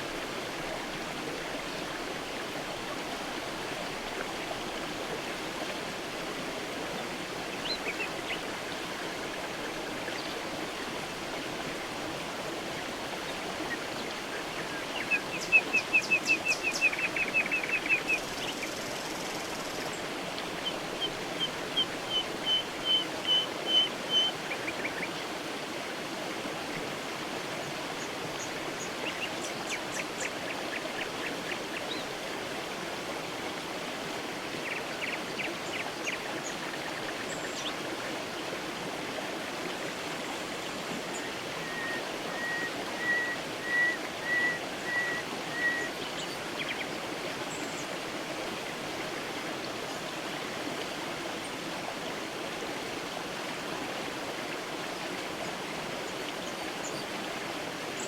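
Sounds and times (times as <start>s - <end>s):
creek water running: 0.0s - 58.0s
songbird singing high notes: 41.2s - 46.0s.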